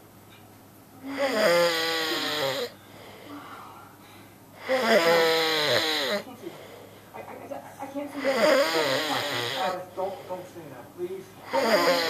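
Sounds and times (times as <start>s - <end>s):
person snoring loudly: 1.0s - 2.8s, 4.6s - 6.2s, 8.2s - 9.8s, 11.5s - 12.0s.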